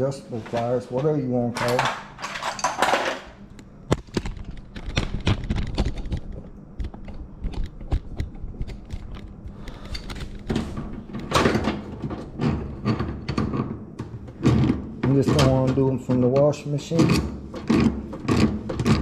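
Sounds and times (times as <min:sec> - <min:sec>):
hand tools clicking and clattering: 0:00.4 - 0:03.3, 0:07.6 - 0:19.0.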